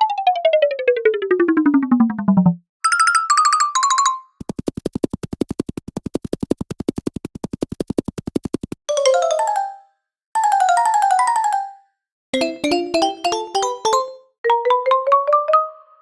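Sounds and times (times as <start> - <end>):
synth-like cartoon steps: 4.4 - 8.8
cartoon running footsteps: 4.4 - 8.9.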